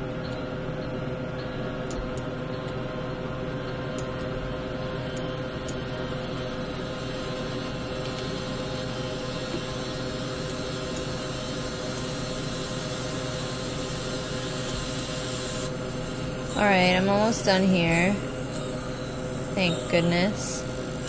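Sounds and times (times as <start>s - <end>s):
background hum and hiss: 0.0s - 21.0s
constant mid-pitched tone: 15.6s - 20.9s.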